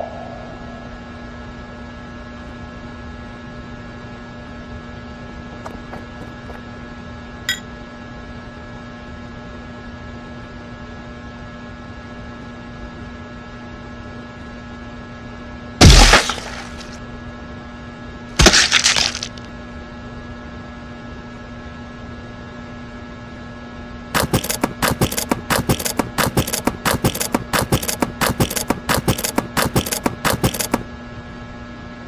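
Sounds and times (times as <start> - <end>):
steady electrical hum: 15.8 - 17.0.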